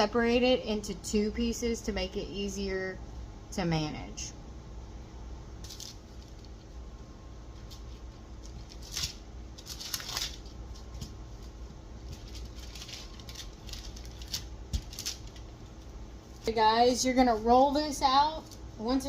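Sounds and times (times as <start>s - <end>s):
low steady hum: 0.0s - 19.0s
hands patting dough: 7.6s - 16.0s.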